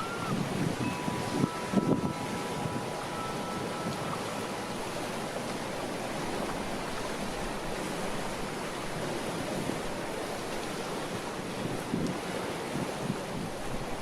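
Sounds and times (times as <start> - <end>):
wind chime ringing: 0.0 - 5.5
water rushing: 0.0 - 14.0
wind: 0.0 - 14.0.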